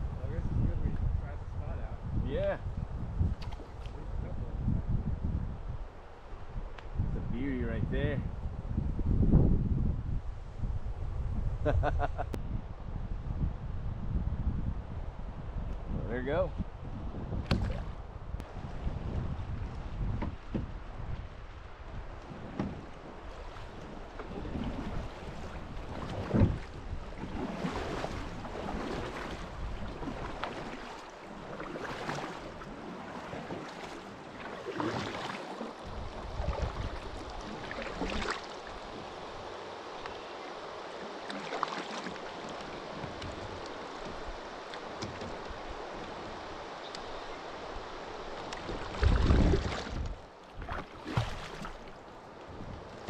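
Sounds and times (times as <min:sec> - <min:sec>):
wind rumbling on microphone: 0:00.0 - 0:40.4, 0:42.0 - 0:53.0
short splashes or knocks: 0:17.4 - 0:18.0, 0:22.2 - 0:38.9, 0:41.2 - 0:46.2, 0:48.4 - 0:53.0
river water rushing: 0:21.4 - 0:53.0.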